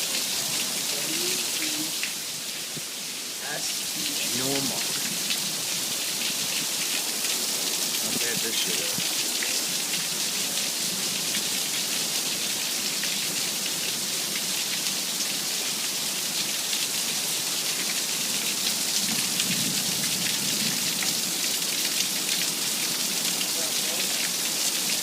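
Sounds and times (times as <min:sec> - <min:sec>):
heavy rain pouring: 0:00.0 - 0:25.0.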